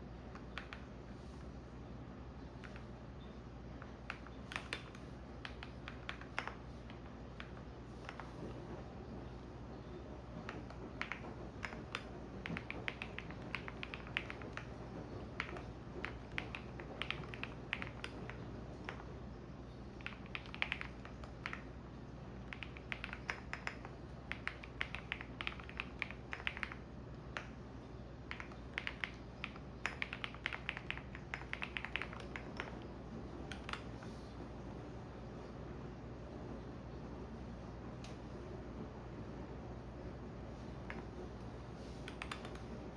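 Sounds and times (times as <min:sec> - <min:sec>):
washing machine hum: 0:00.0 - 0:42.9
computer keyboard typing: 0:00.3 - 0:01.0, 0:02.6 - 0:02.9, 0:03.7 - 0:08.6, 0:10.2 - 0:19.2, 0:19.8 - 0:21.8, 0:22.4 - 0:27.6, 0:28.2 - 0:34.2, 0:41.8 - 0:42.8.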